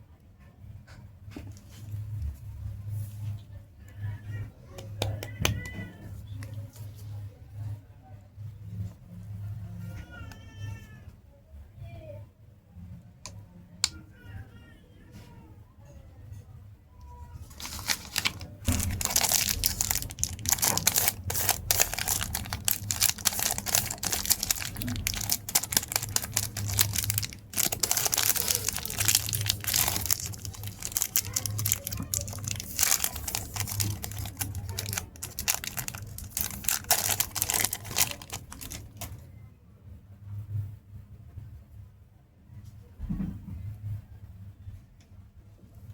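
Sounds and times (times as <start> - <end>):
wrapper crinkling: 17.4 - 39.2.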